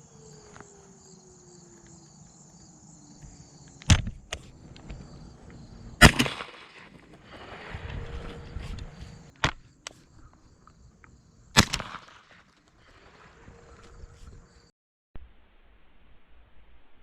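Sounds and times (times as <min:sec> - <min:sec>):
insects trilling: 0:00.0 - 0:14.7
rolling echo: 0:03.8 - 0:09.6
shotgun shots: 0:06.0 - 0:07.0, 0:11.5 - 0:12.4.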